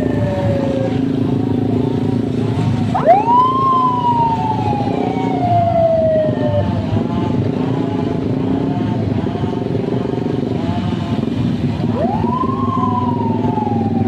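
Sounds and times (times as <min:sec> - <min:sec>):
siren whoop: 0:00.0 - 0:07.6, 0:11.8 - 0:14.0
vehicle engine running: 0:00.0 - 0:14.0.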